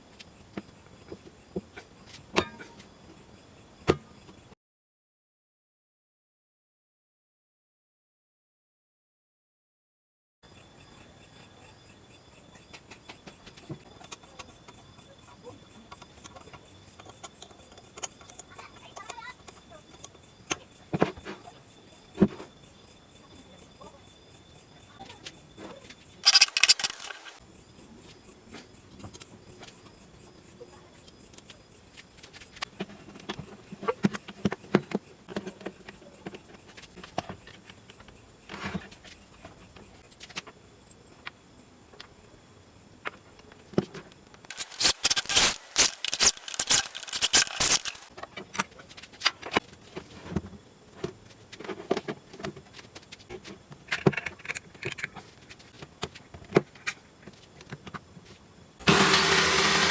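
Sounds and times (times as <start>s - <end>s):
high insect drone: 10.4s - 40.1s, 44.5s - 48.2s.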